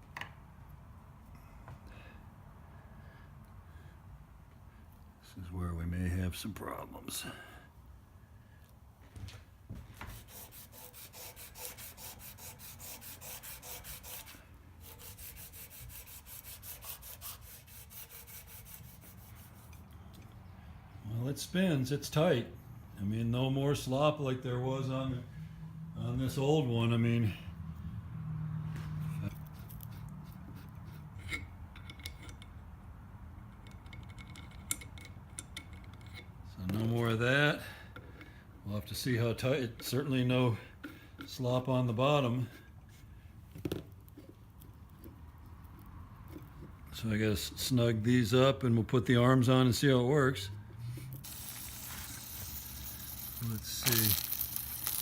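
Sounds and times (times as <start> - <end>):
rhythmic rubbing scrape: 10.2 - 19.8, 51.2 - 55.0
metal parts clicking and clinking: 33.5 - 36.3, 51.2 - 55.0.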